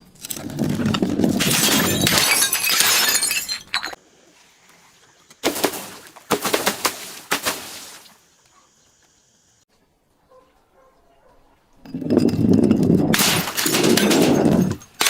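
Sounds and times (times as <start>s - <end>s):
glass shattering: 1.4s - 4.0s, 5.4s - 8.1s, 13.2s - 15.0s
sharp cracks: 5.4s - 8.1s, 13.2s - 15.0s.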